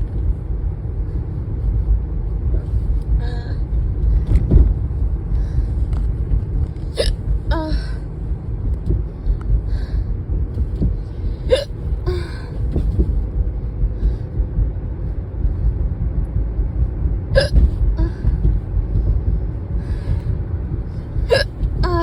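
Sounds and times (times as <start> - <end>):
car rumble inside cabin: 0.0 - 22.0
person hiccuping: 7.0 - 7.2, 17.4 - 18.1, 21.3 - 22.0.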